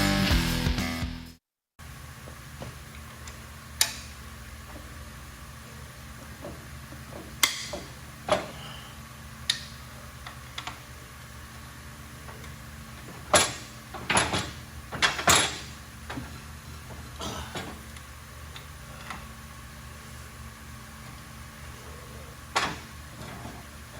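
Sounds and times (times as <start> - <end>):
steady low hum: 1.8 - 23.9
knocks and clatters of hand work: 6.4 - 8.6, 12.3 - 16.3, 22.5 - 23.7.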